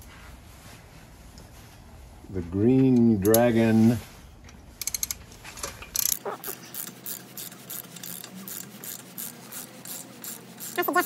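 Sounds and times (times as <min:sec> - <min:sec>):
ratchet wrench clicking: 0:04.8 - 0:05.2, 0:05.9 - 0:11.0.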